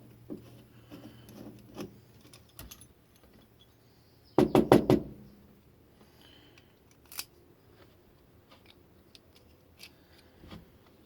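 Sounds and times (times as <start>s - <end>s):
sharp knocks: 4.4s - 5.2s.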